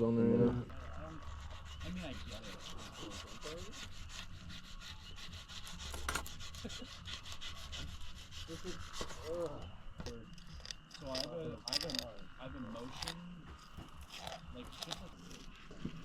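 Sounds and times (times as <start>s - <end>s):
knife rasping through fish skin: 0.7s - 12.2s.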